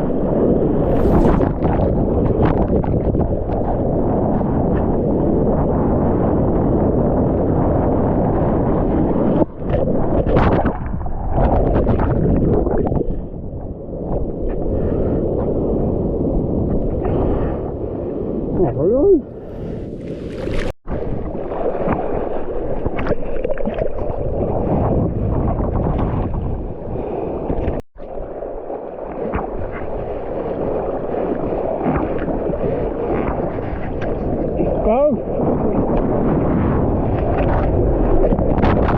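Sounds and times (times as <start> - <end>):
wind: 0.0 - 38.9
water splashing over camera: 0.2 - 5.4, 19.3 - 26.7, 27.4 - 38.9
surf water rushing: 0.6 - 1.8, 19.2 - 22.8
water sloshing and splashing: 19.4 - 26.1.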